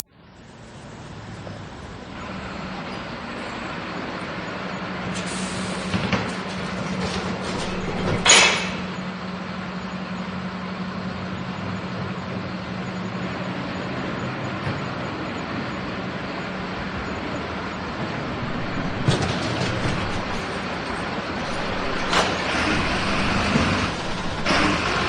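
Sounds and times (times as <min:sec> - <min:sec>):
garbage truck idling: 0:00.0 - 0:25.0
sharp noisy bursts: 0:18.4 - 0:25.0.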